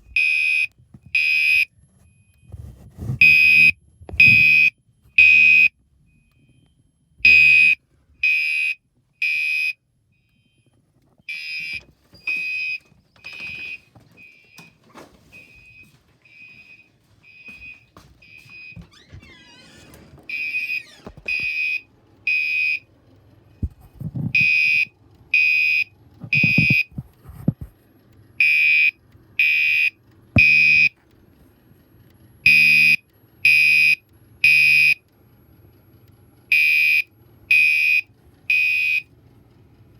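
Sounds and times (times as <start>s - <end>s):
fire alarm horn beeps: 0.1s - 1.7s, 3.2s - 10.7s, 11.3s - 14.6s, 15.4s - 22.8s, 24.4s - 26.9s, 28.4s - 31.0s, 32.4s - 35.0s, 36.5s - 39.1s.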